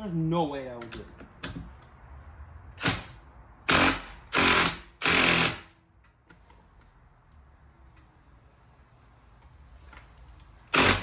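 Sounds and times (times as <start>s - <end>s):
impact wrench bursts: 2.8s - 5.8s, 10.7s - 11.0s.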